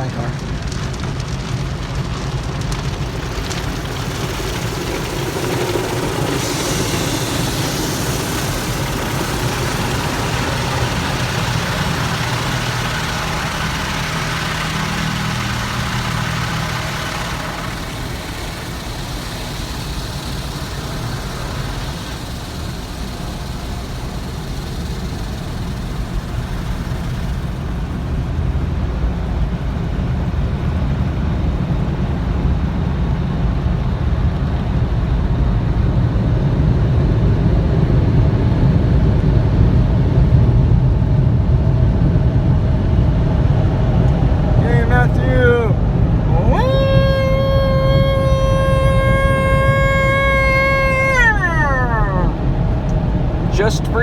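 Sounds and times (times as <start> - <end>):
car engine idling: 0.0 - 28.4
car wash water spray and machinery: 0.0 - 34.8.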